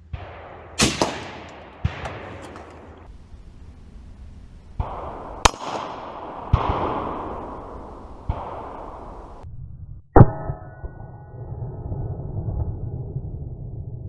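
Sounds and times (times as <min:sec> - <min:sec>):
rifle shots with echo: 0:00.0 - 0:03.1, 0:04.8 - 0:09.3
steel target ringing: 0:00.4 - 0:03.0.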